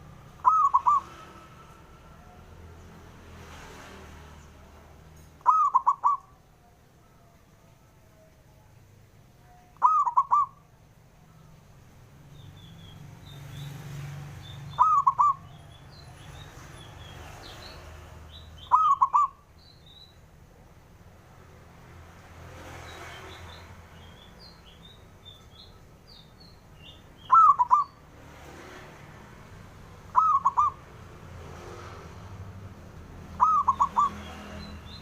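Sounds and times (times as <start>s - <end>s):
dove cooing: 0.4s - 1.2s, 5.4s - 6.4s, 9.8s - 10.6s, 14.8s - 15.5s, 18.7s - 19.4s, 27.3s - 28.0s, 30.1s - 30.9s, 33.4s - 34.3s
small birds chirping: 11.4s - 20.4s, 22.7s - 28.2s, 29.4s - 35.0s.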